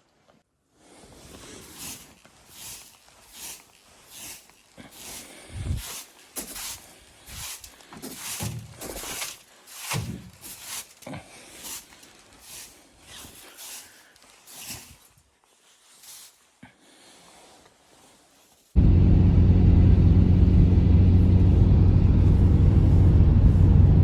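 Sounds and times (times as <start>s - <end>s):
footsteps crunching in snow: 1.0s - 18.8s.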